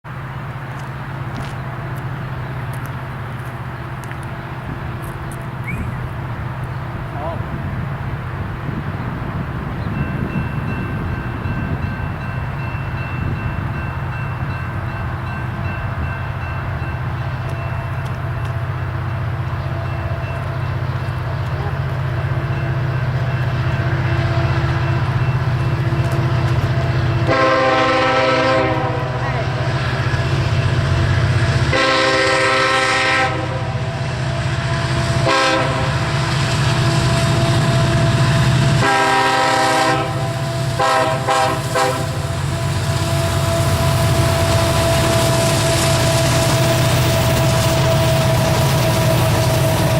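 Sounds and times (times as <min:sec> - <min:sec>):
diesel locomotive engine rumble: 0:00.0 - 0:49.9
locomotive horn blasts: 0:26.5 - 0:29.9, 0:31.6 - 0:33.9, 0:34.6 - 0:49.9.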